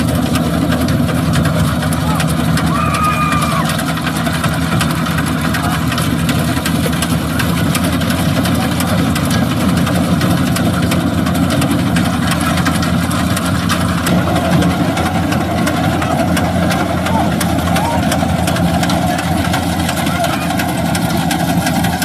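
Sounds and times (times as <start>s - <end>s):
harvester engine running: 0.0s - 22.0s.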